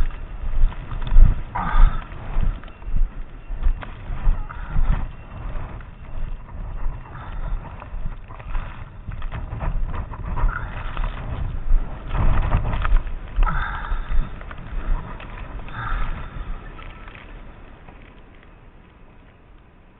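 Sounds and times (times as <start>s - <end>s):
wind buffeting microphone: 0.0s - 19.9s.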